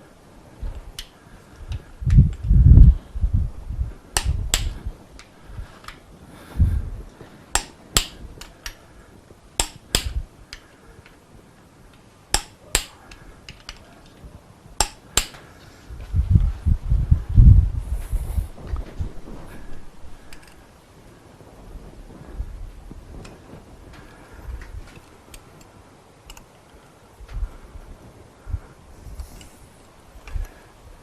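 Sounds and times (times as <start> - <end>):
torque wrench clicking: 7.5 - 8.8, 9.6 - 10.7, 12.3 - 13.8, 14.8 - 15.4.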